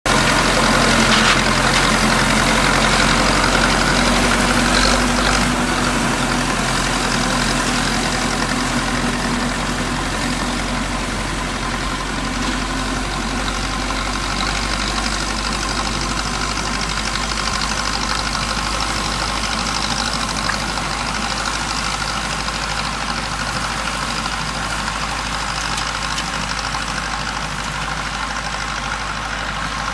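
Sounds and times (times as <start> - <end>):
tractor diesel engine: 0.0 - 29.9
mower whirring: 0.1 - 29.9.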